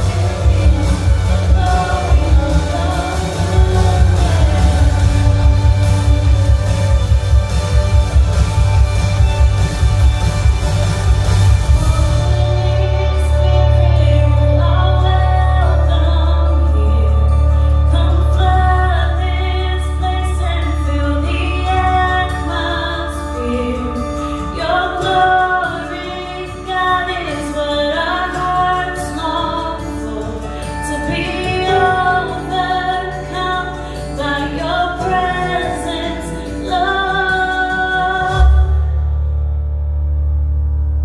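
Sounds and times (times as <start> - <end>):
woman singing worship song: 0.0 - 7.6, 11.6 - 39.2
low musical accompaniment: 0.0 - 26.0.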